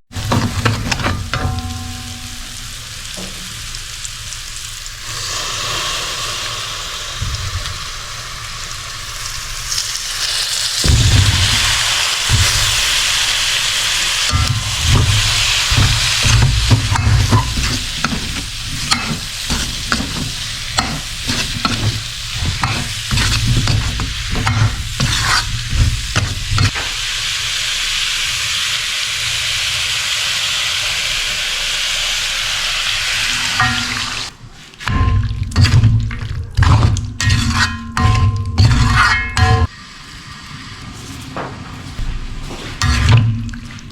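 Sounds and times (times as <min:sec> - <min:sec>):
food sizzling in hot oil: 0:00.1 - 0:41.2
spatula scraping a pan: 0:10.9 - 0:26.8, 0:34.8 - 0:39.7, 0:41.9 - 0:43.6.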